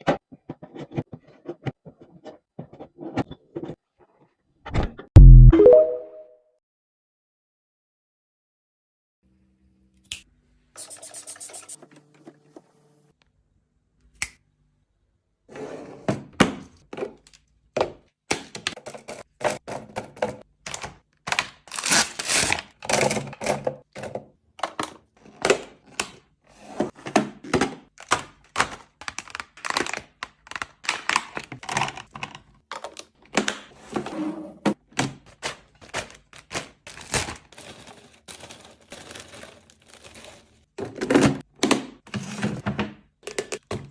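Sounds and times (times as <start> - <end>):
brief tone: 5.2 - 6.5
containers clicking and knocking: 42.4 - 43.9.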